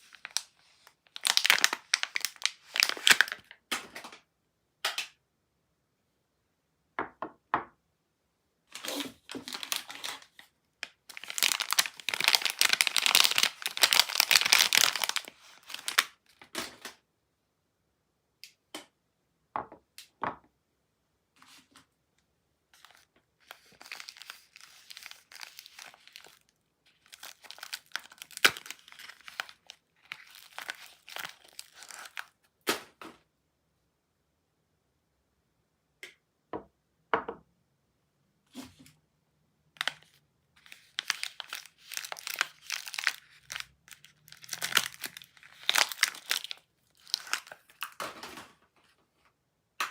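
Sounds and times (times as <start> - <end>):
packaging tearing and crinkling: 0.0 - 4.0, 8.7 - 16.9, 22.8 - 32.4, 39.8 - 48.4.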